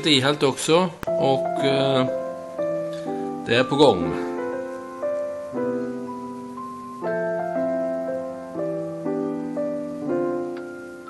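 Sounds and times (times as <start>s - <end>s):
gentle keyboard tune: 0.0s - 11.0s.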